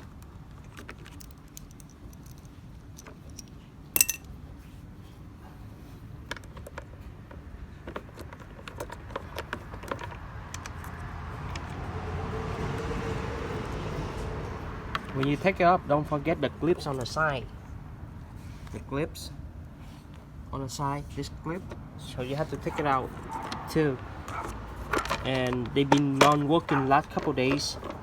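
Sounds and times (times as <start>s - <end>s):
sharp ringing metallic clink: 4.0s - 4.3s
low steady rumble: 8.6s - 25.8s.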